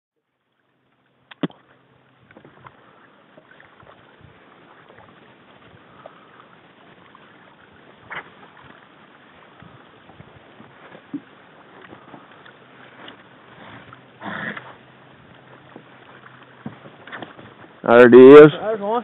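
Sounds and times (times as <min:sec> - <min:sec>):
water noise: 0:00.2 - 0:19.0
wind noise: 0:09.5 - 0:11.2.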